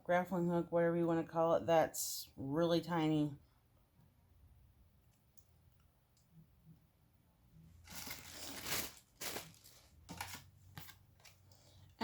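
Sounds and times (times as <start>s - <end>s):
packaging crinkling: 7.8s - 11.4s.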